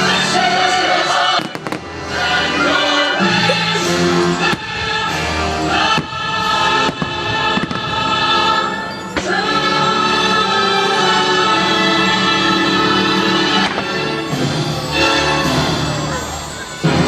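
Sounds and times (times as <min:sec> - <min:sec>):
orchestra and choir singing: 0:00.0 - 0:17.0
fireworks bangs: 0:01.2 - 0:09.4.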